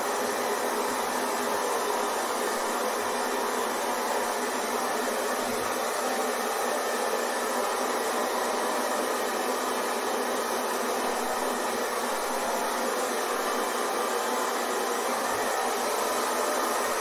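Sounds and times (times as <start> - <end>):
hair dryer blowing: 0.0 - 17.0.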